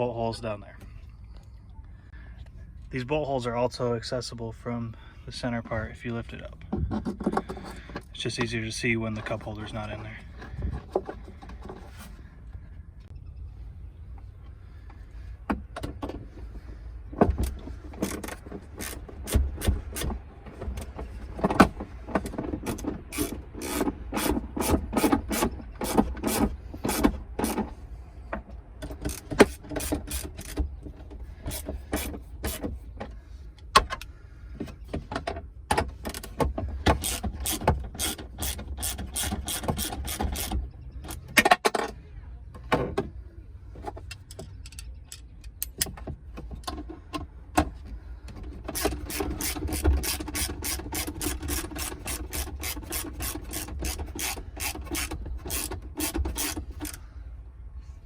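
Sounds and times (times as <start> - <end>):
socket ratchet clicking: 36.9 - 41.3, 48.7 - 57.0.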